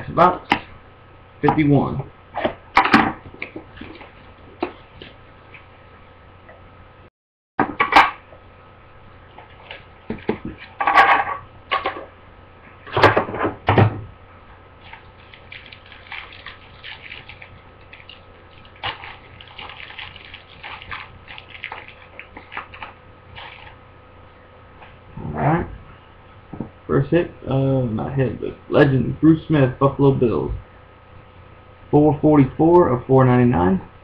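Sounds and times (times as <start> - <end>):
packaging crackling and rustling: 14.8 - 23.8.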